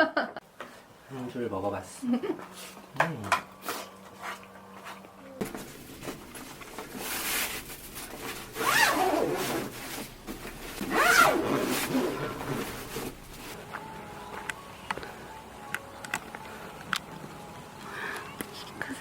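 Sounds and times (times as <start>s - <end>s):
rustling noise: 3.6s - 13.8s.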